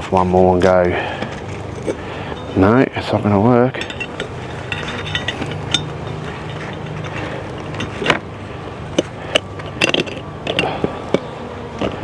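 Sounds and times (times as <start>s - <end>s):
honey bees humming: 0.0s - 12.0s
buckle clicks and knocks: 8.9s - 12.0s.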